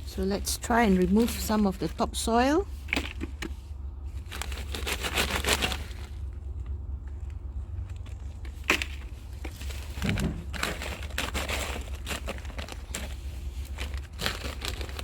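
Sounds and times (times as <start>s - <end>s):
soil being scraped and moved: 2.7s - 6.3s, 7.9s - 15.0s.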